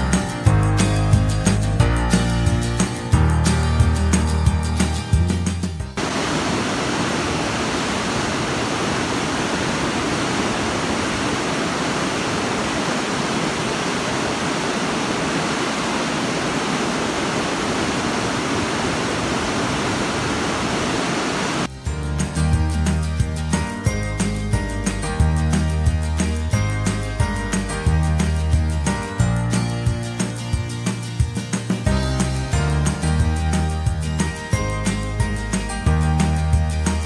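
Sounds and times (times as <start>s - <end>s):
background music: 0.0s - 6.0s, 21.7s - 37.0s
rushing river water: 6.0s - 21.7s.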